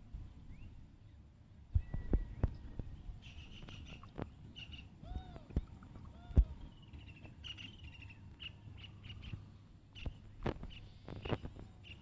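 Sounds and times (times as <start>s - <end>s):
birds chirping: 0.3s - 12.0s
whistled bird notes: 1.7s - 9.4s.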